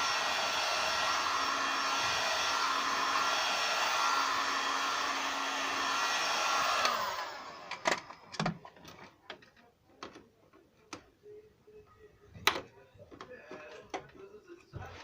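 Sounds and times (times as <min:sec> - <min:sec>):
hot-air blower hissing: 0:00.0 - 0:08.2.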